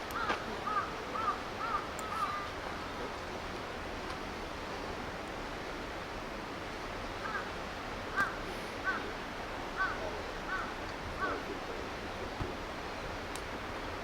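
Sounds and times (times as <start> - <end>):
river rushing: 0.0 - 14.0
crow cawing: 0.2 - 2.5, 7.2 - 7.5, 8.1 - 9.1, 9.8 - 11.4.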